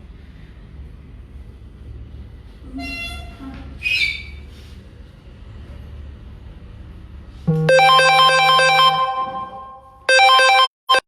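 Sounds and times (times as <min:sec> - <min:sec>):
phone ringtone electronic melody: 0:07.5 - 0:11.0.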